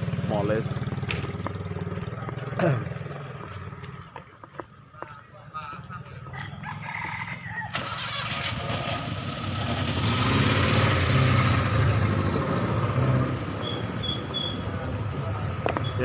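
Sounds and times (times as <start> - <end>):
vehicle engine running: 0.0 - 6.1.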